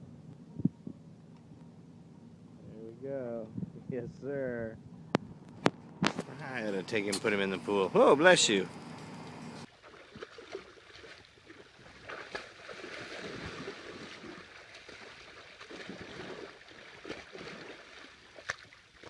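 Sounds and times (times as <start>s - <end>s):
water sloshing in a pool: 9.6s - 19.0s.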